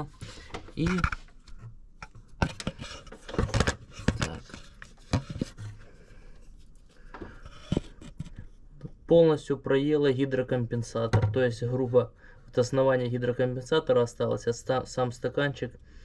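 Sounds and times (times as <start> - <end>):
scraping and rubbing: 0.1 - 8.6.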